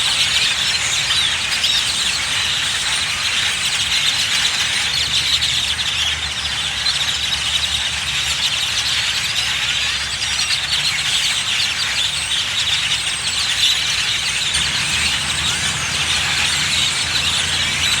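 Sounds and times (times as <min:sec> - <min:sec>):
flock of birds chattering: 0:00.0 - 0:18.0
low steady hum: 0:14.5 - 0:18.0.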